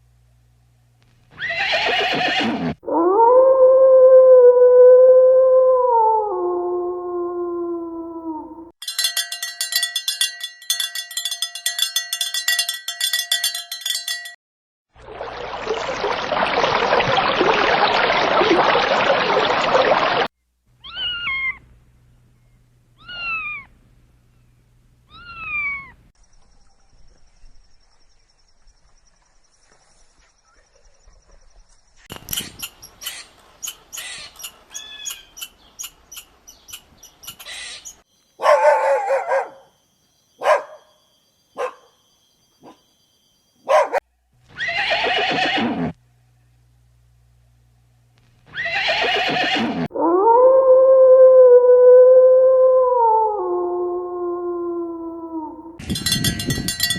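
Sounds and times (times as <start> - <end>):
cat-like meows: 20.8 - 21.6, 23.0 - 23.7
buzzy ringing tone: 55.8 - 56.9.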